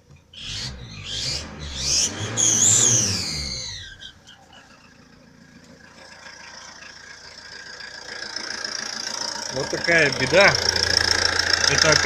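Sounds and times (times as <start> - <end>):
diesel engine idling: 0.0 - 12.0
high exhaust whistle: 0.4 - 4.2.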